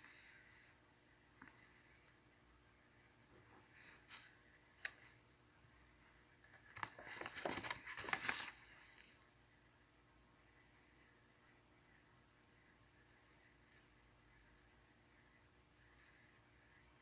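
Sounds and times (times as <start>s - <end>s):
paper rustling: 6.0s - 9.2s.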